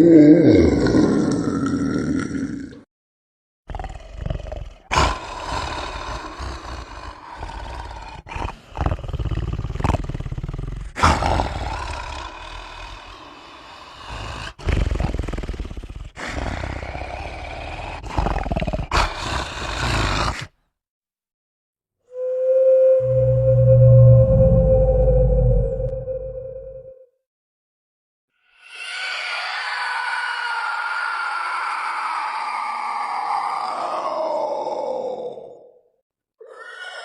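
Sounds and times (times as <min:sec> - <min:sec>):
monster growling roars: 0:00.0 - 0:02.8, 0:03.7 - 0:20.5, 0:28.6 - 0:35.8.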